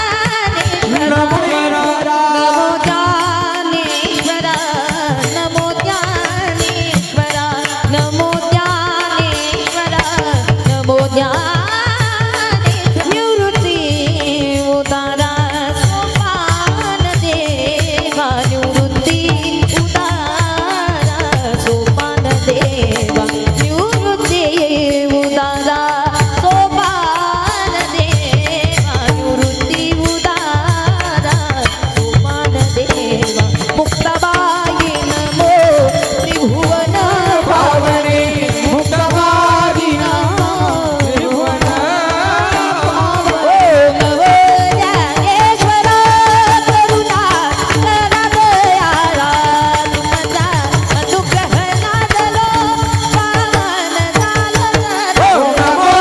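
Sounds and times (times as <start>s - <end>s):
hand drum beat: 0.0s - 1.8s, 2.7s - 56.0s
person singing: 0.0s - 11.8s, 32.0s - 52.4s, 53.3s - 56.0s.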